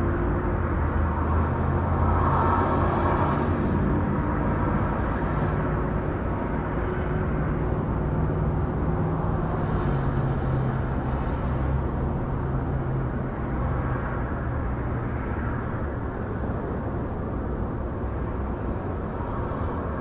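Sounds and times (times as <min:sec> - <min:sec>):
traffic rumble: 0:00.0 - 0:20.0.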